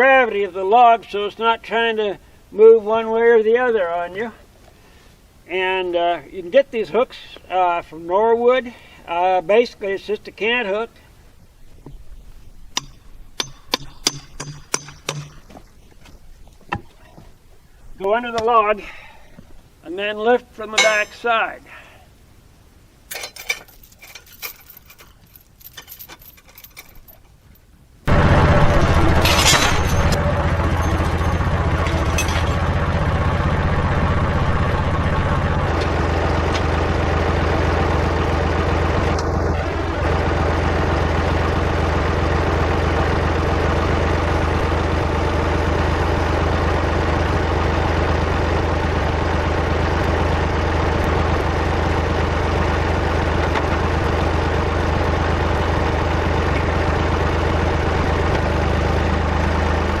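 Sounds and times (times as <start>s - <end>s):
engine running with low hum: 11.0s - 19.8s, 28.1s - 60.0s.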